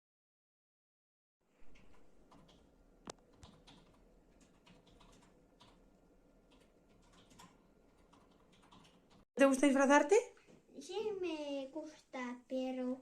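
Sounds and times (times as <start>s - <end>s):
small clicks and taps: 1.7s - 5.8s.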